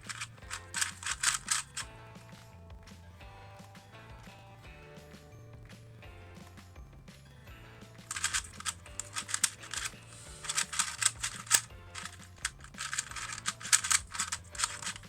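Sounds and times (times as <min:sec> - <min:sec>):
plastic puzzle cube clicking: 0:00.0 - 0:01.8, 0:08.1 - 0:15.0.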